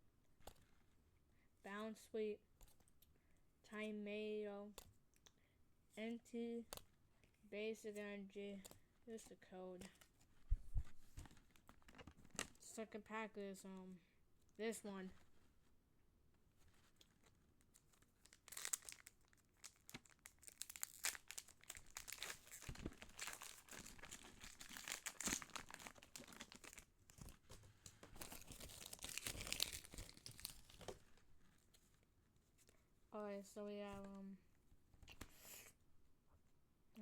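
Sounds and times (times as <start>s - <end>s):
foil wrapper tearing and crinkling: 18.2s - 27.4s, 28.1s - 30.9s.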